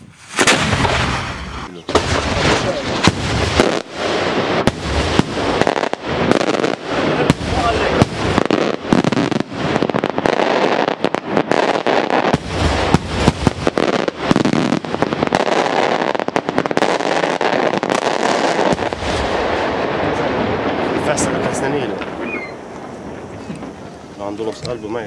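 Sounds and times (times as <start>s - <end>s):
fireworks bangs and cracks: 0.0s - 25.0s.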